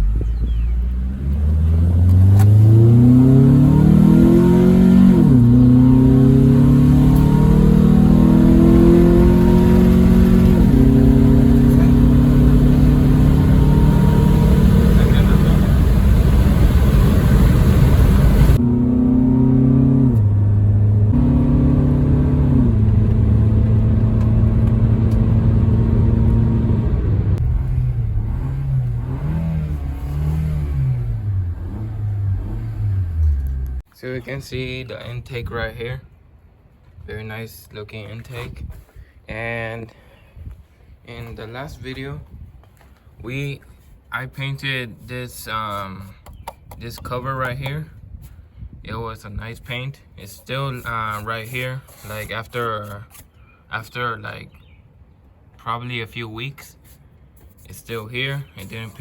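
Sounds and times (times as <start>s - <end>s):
car engine accelerating: 0.0s - 33.8s
road rumble: 0.0s - 59.0s.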